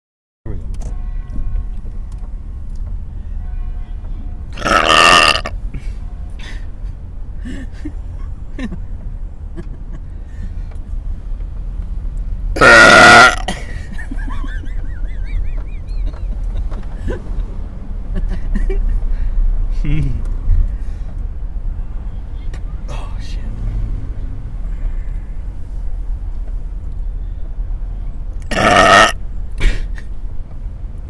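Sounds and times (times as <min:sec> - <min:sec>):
car rumbling on road: 0:00.5 - 0:31.0
person belching: 0:04.6 - 0:05.5, 0:12.6 - 0:13.6, 0:28.4 - 0:29.2.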